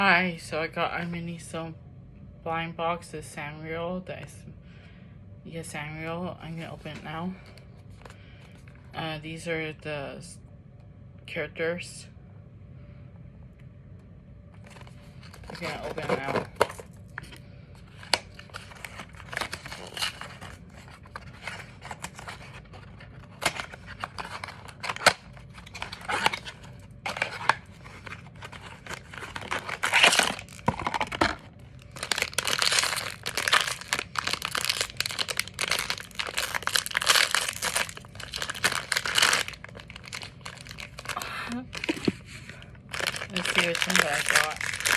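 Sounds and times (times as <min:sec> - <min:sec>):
packaging being torn and crinkled: 0:14.6 - 0:44.9.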